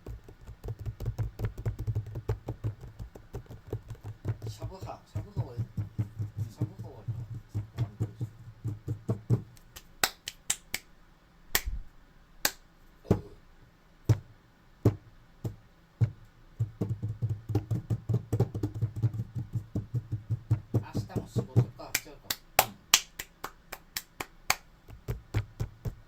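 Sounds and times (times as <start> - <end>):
hand taps: 0.0 - 10.9, 12.4 - 13.4, 14.1 - 26.0
finger snaps: 9.6 - 10.9, 11.5 - 11.8, 12.4 - 12.6.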